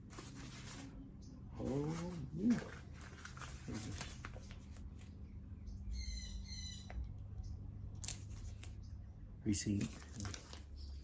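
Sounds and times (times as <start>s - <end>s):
packaging rustling and clicking: 1.8s - 5.1s, 9.8s - 11.0s.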